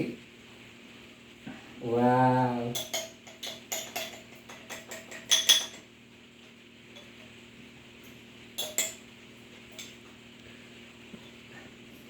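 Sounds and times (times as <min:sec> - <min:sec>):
spoon clinking against jar: 0:02.7 - 0:05.8, 0:08.6 - 0:09.0.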